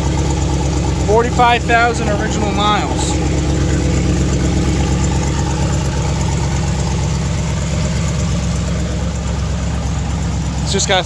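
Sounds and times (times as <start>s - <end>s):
truck engine idling: 0.0s - 11.0s.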